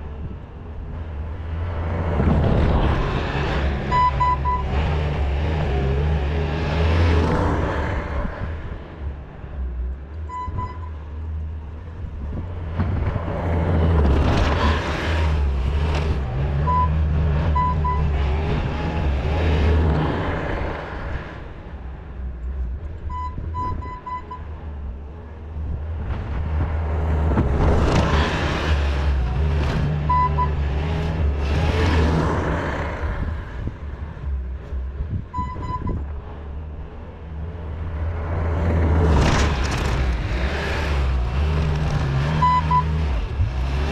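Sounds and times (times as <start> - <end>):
backup alarm beeps: 3.9 - 4.7, 10.3 - 10.9, 23.1 - 24.4, 30.1 - 30.6, 35.4 - 36.0.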